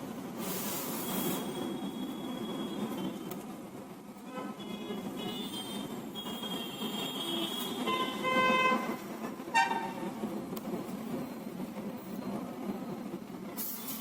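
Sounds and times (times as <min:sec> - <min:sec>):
vehicle horns honking: 0:04.3 - 0:10.0.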